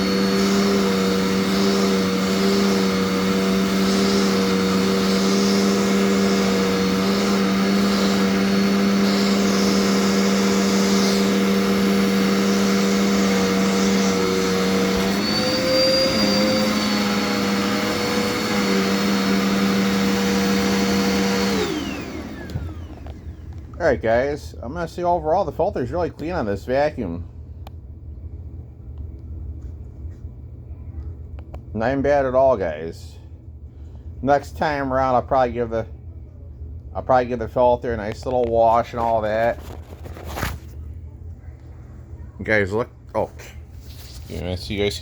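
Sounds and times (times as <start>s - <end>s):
vacuum cleaner running: 0.0s - 27.2s.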